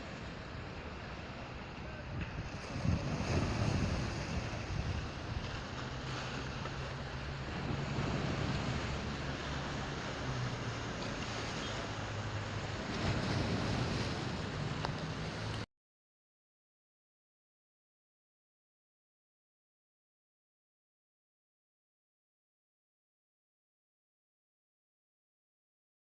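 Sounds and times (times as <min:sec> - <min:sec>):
wind buffeting microphone: 0:00.0 - 0:15.6
sea rushing: 0:00.0 - 0:15.7.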